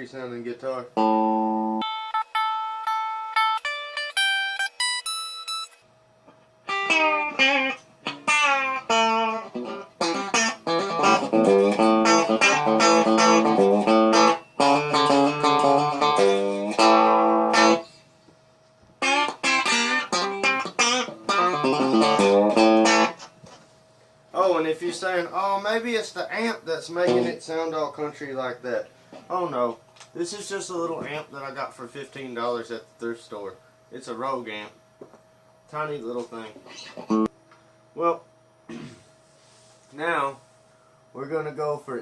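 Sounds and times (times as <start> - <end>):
twangy electric guitar picking: 1.0 - 5.5, 6.7 - 18.0, 19.0 - 23.4, 27.0 - 27.4, 36.7 - 37.3.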